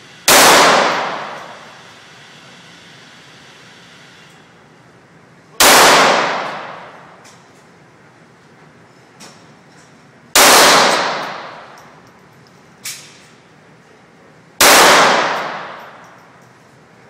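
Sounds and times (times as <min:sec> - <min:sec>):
echoing gunshots: 0:00.3 - 0:01.8, 0:05.6 - 0:07.2, 0:10.4 - 0:12.0, 0:14.6 - 0:16.1.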